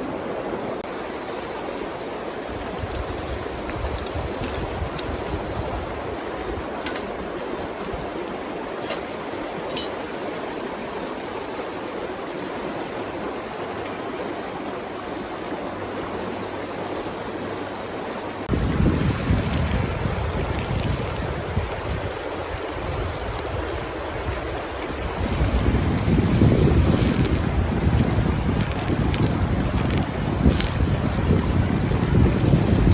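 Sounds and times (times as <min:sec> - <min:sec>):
river water rushing over stones: 0:00.0 - 0:32.9
wind on microphone: 0:02.5 - 0:08.2, 0:18.5 - 0:32.9.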